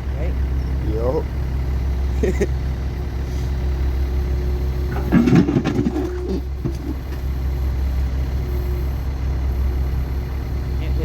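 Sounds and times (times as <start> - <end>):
excavator engine running: 0.0 - 11.0
bucket scraping rocky ground: 4.9 - 7.3.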